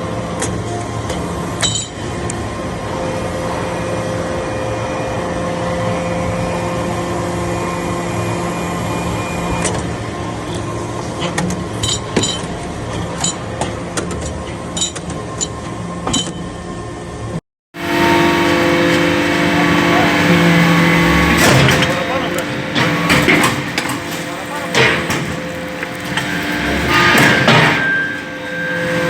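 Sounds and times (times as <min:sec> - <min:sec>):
machine humming: 0:17.8 - 0:29.0.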